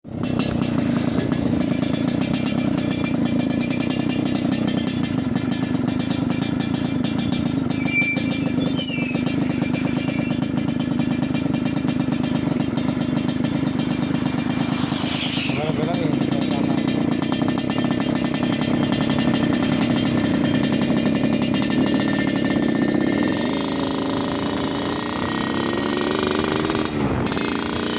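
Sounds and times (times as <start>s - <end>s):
motorcycle engine idling: 0.0s - 27.9s.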